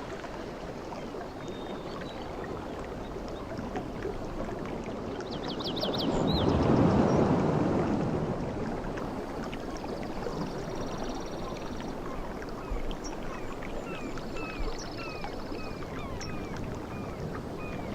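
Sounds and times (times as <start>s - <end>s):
ocean waves breaking on beach: 5.8s - 17.9s.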